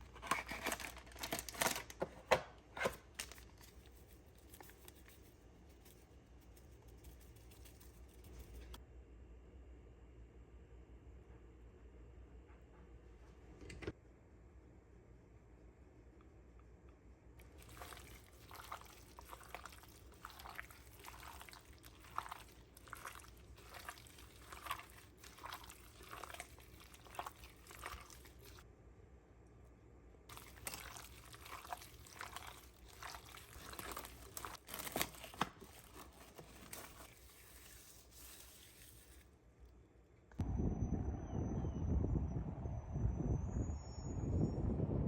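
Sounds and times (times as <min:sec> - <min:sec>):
soft rustling handling noises: 0:00.0 - 0:08.8, 0:30.3 - 0:39.4.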